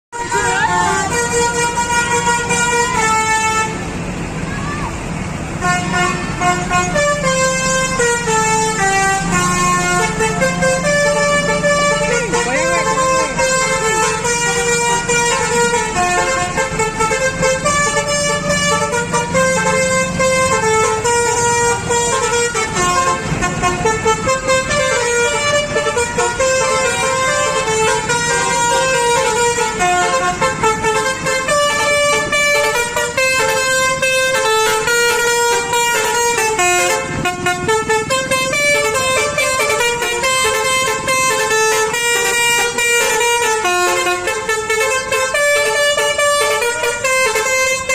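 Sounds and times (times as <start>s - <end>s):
multi-tone musical air horns: 0.1s - 4.0s, 5.5s - 47.9s.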